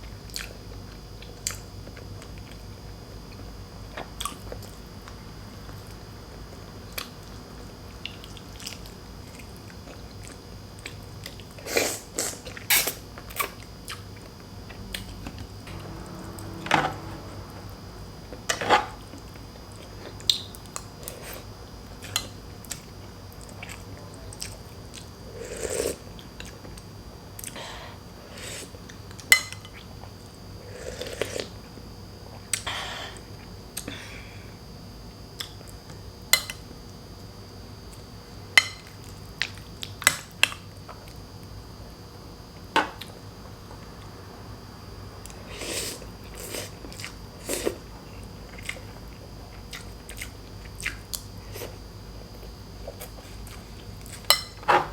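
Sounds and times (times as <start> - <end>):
chewing and biting food: 48.5 - 54.3.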